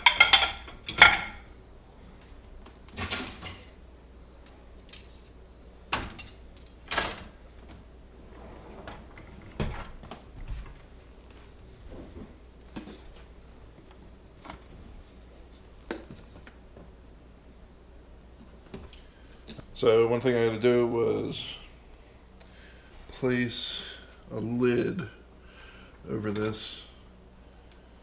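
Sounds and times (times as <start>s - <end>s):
dishes and cutlery clattering: 0.0s - 1.4s, 3.0s - 3.8s, 6.0s - 7.4s.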